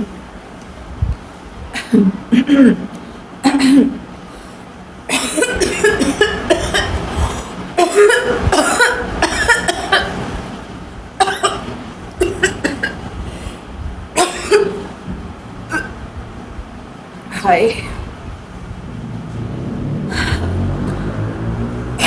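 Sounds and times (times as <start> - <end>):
woman coughing: 1.8 - 4.0, 5.1 - 7.1, 7.8 - 10.2, 11.2 - 13.0, 14.2 - 14.9, 15.7 - 16.0.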